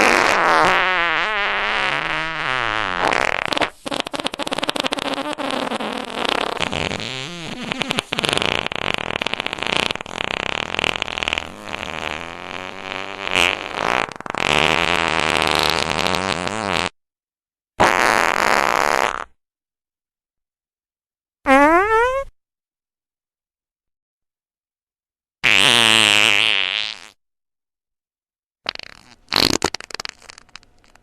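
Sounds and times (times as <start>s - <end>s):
fart sound effects: 0.0s - 17.0s, 17.8s - 19.4s, 21.5s - 22.3s, 25.4s - 27.2s, 28.7s - 31.0s.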